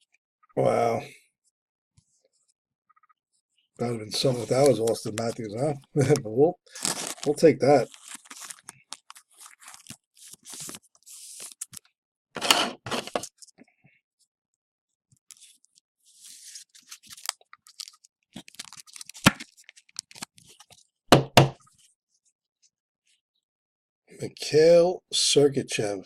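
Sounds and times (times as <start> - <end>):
paper and wrapper rustling: 4.1 - 11.9, 12.9 - 13.5, 15.2 - 20.9.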